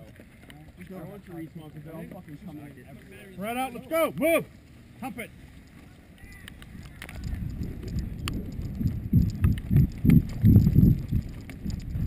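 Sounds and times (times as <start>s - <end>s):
running footsteps: 0.0s - 12.0s
camera jostling thuds: 7.2s - 12.0s.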